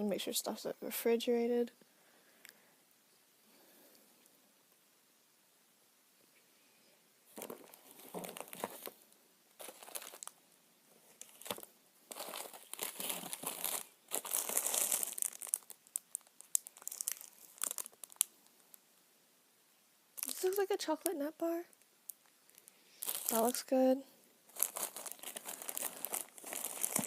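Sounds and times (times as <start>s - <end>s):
plastic packaging crinkling: 7.3s - 10.4s, 11.1s - 18.7s, 20.2s - 23.8s, 24.5s - 27.0s.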